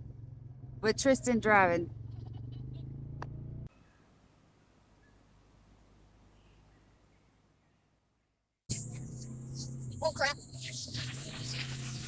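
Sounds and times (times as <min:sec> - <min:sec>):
vehicle engine humming: 0:00.0 - 0:03.7
hiss: 0:08.7 - 0:12.0.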